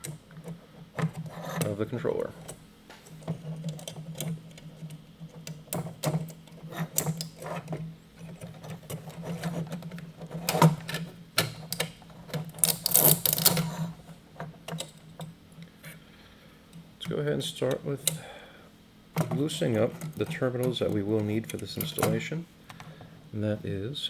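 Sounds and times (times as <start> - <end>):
low steady hum: 0.0 - 24.0
plastic housing clicks and rattles: 3.2 - 13.8.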